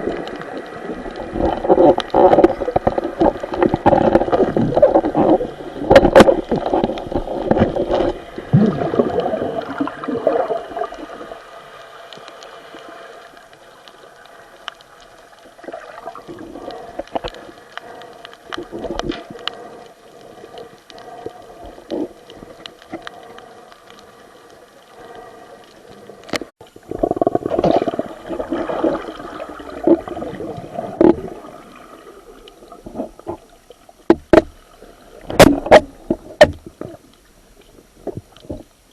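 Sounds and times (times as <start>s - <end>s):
water gurgling and bubbling: 0.0s - 11.5s, 15.6s - 17.4s, 26.7s - 33.7s.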